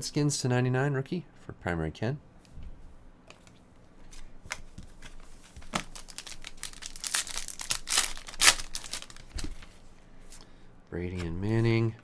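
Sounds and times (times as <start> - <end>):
wrapper tearing and crinkling: 5.7 - 9.7.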